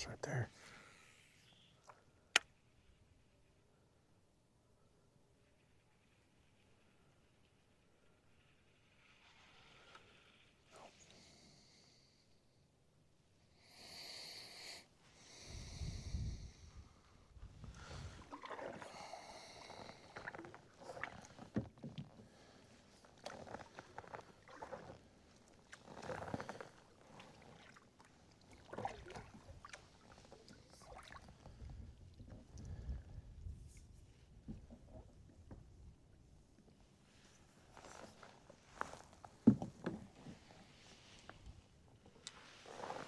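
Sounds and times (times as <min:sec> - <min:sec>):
paddle strokes in water and mud: 0:17.4 - 0:43.0
water sloshing: 0:17.7 - 0:19.0, 0:24.2 - 0:32.6.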